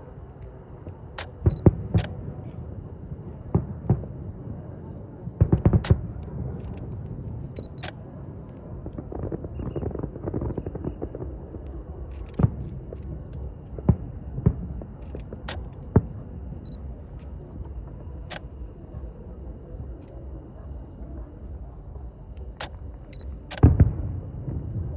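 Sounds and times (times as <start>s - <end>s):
steady low rumble: 0.0s - 24.9s
fireworks booming: 3.2s - 4.6s, 8.8s - 16.6s, 23.6s - 24.9s.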